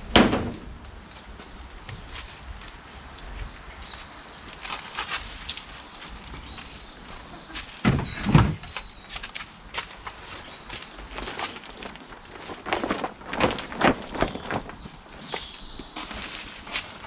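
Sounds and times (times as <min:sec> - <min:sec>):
birds chirping: 0:02.8 - 0:05.0, 0:06.2 - 0:12.6, 0:13.4 - 0:16.4.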